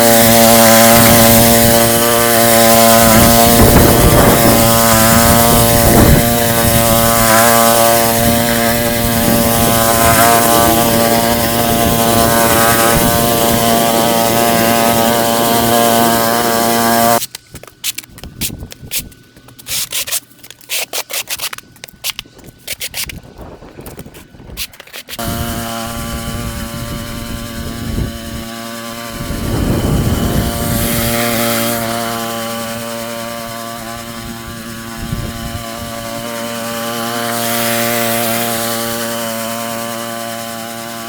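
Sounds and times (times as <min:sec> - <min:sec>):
petrol engine running: 0:00.0 - 0:17.2
wire brush scrubbing pavement: 0:00.0 - 0:41.0.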